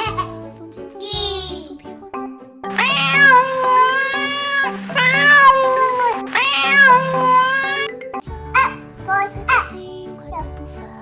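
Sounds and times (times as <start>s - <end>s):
background music: 0.0s - 11.0s
cat meowing: 2.7s - 4.4s, 5.0s - 7.8s.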